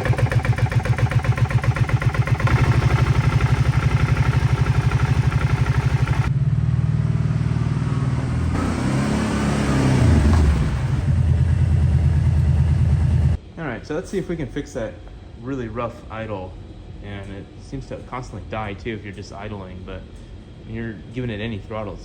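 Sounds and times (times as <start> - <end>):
engine idling roughly: 0.0 - 6.3, 10.4 - 13.4.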